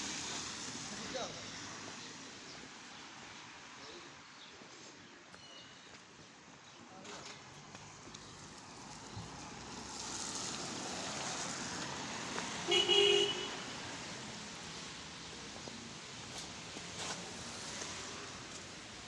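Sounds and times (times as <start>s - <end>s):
vehicle passing: 7.9s - 18.9s.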